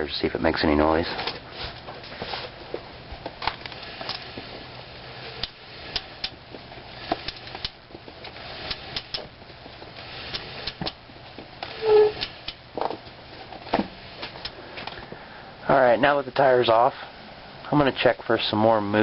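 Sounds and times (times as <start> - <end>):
wheel hub spinning: 1.4 - 15.2
short loud squeak: 11.7 - 12.3.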